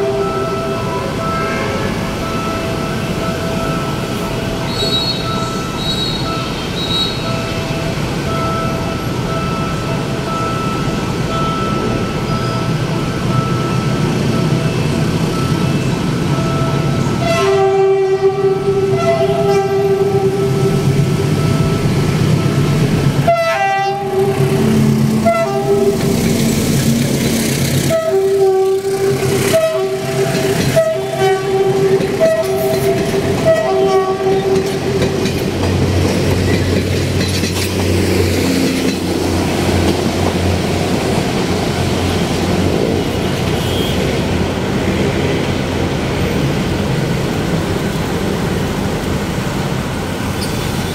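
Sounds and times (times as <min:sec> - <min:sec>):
train horn blasts: 0:00.0 - 0:02.4, 0:17.2 - 0:20.8, 0:23.2 - 0:26.5, 0:27.8 - 0:35.2, 0:43.2 - 0:44.2
train rumbling by: 0:00.0 - 0:50.9.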